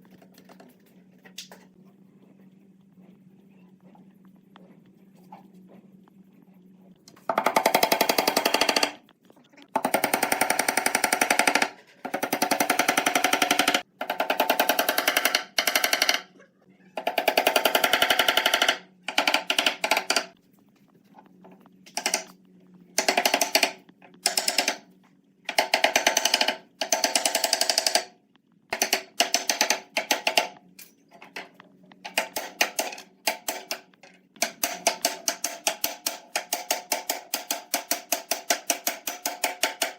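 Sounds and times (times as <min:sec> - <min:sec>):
power tool hammering: 0:07.3 - 0:09.0, 0:09.8 - 0:16.3, 0:17.0 - 0:20.4, 0:23.0 - 0:24.8, 0:25.5 - 0:28.1, 0:28.7 - 0:30.6, 0:32.1 - 0:33.8, 0:34.4 - 0:39.9.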